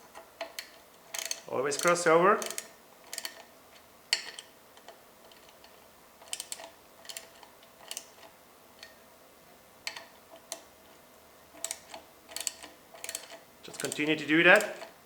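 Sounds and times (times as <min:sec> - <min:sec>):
ratcheting wrench clicking: 0:00.5 - 0:03.5, 0:06.2 - 0:08.1, 0:11.6 - 0:14.9.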